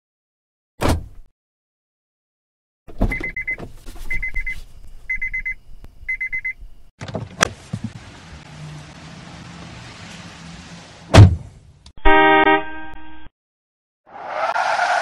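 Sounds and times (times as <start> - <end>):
sharp thump: 0.8 - 1.2, 11.1 - 11.5
car warning chime beeping: 3.1 - 6.9.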